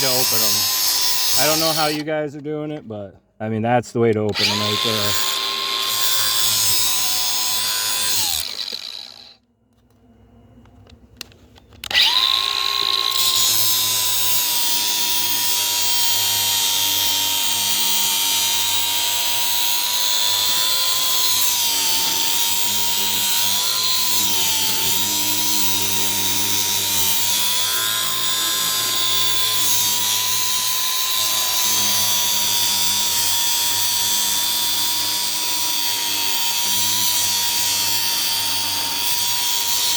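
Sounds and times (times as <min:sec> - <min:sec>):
electric power tool whining: 0:00.0 - 0:02.1, 0:04.3 - 0:09.4, 0:11.7 - 0:39.9.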